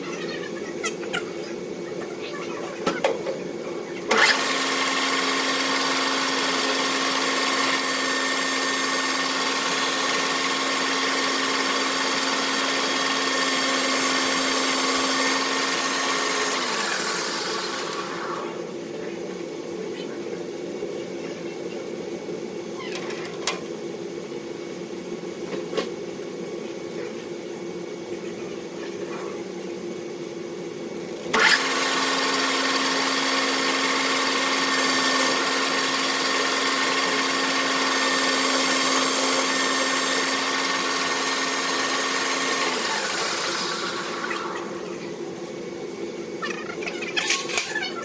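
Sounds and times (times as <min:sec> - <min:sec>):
machine whirring and hissing: 0:02.8 - 0:18.7
motor humming: 0:04.0 - 0:18.7, 0:31.2 - 0:45.4.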